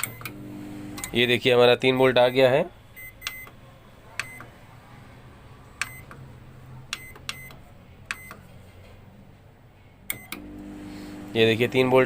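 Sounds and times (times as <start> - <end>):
microwave oven humming: 0.0 - 1.2, 10.1 - 12.0.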